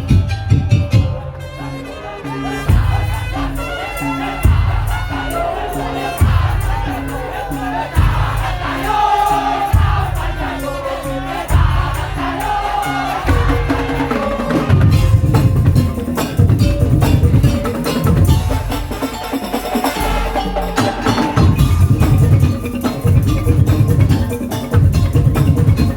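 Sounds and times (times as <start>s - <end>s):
percussion ensemble melody: 0.0s - 25.9s
deep drum strokes: 11.4s - 19.2s.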